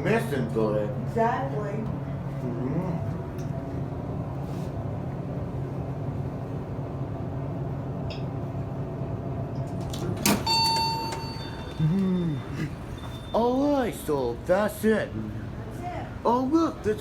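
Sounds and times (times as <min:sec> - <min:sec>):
elevator low hum: 0:00.0 - 0:17.0
elevator clunk: 0:09.6 - 0:13.5
elevator arrival chime: 0:09.9 - 0:14.1.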